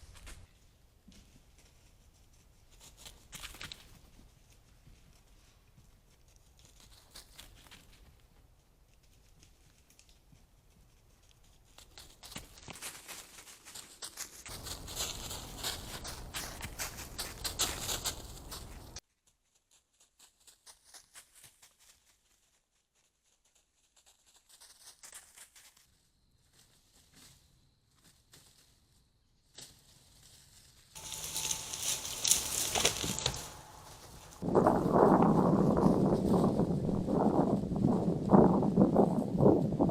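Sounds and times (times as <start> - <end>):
leaves rustling: 11.7 - 19.0, 29.5 - 39.9
footsteps in leaf litter: 12.7 - 19.0, 31.0 - 36.7.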